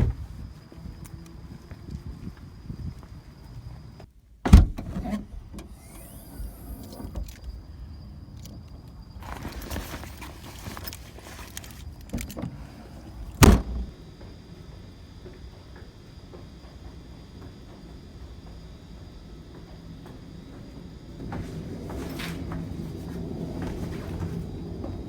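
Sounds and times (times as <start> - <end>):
rustling noise: 9.2 - 13.1, 21.2 - 25.0.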